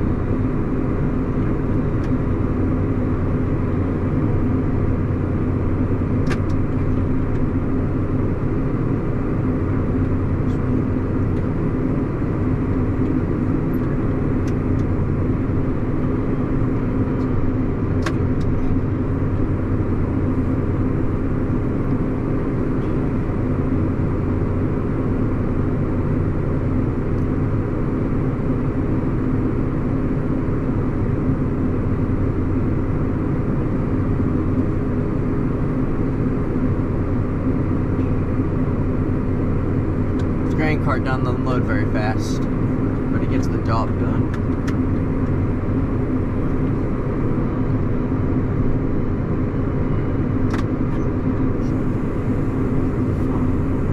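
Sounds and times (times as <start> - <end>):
tractor engine running: 31.3 - 53.9.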